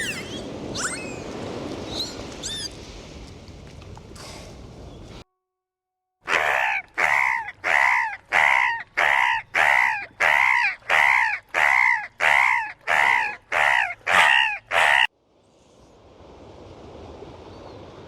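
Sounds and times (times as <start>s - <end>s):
animal harsh calls: 6.3s - 15.1s.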